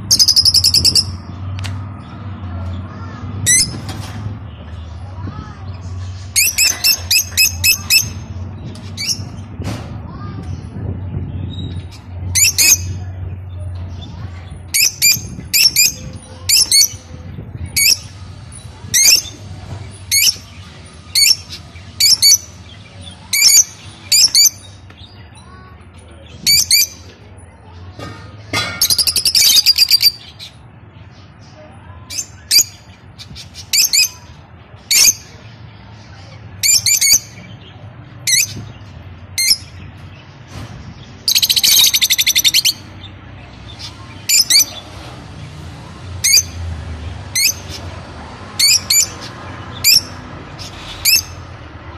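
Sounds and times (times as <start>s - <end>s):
lovebirds rapid chattering: 2.1s - 9.5s, 10.1s - 27.5s, 28.4s - 46.6s
lovebirds chirping: 28.8s - 45.4s.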